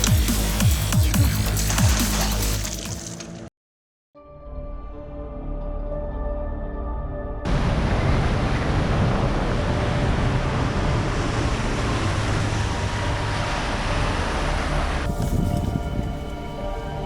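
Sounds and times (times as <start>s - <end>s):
boat running across water: 7.5s - 17.0s
wind on microphone: 7.5s - 17.0s.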